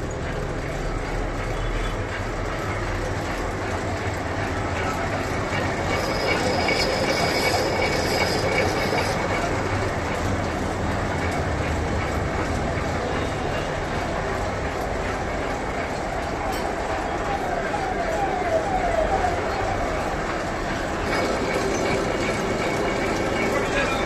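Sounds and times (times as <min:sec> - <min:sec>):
lathe running: 0:00.0 - 0:24.0
high-pitched squeal: 0:05.6 - 0:09.6.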